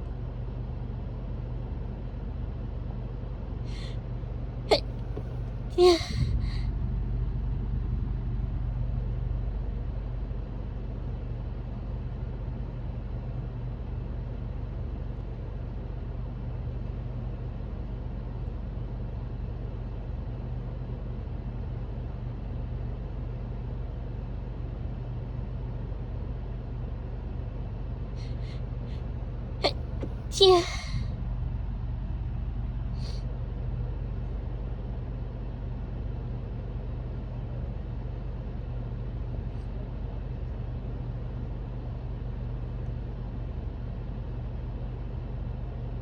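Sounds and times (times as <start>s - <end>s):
steady low rumble: 5.7s - 11.8s.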